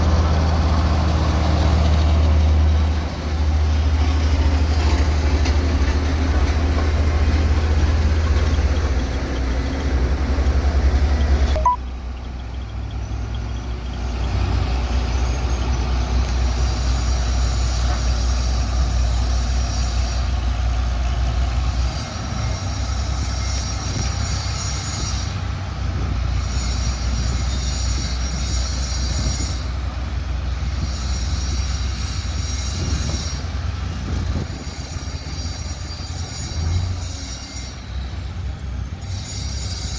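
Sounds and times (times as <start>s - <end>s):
diesel machinery engine rumble: 0.0s - 37.0s
high-pitched whine: 11.6s - 11.9s.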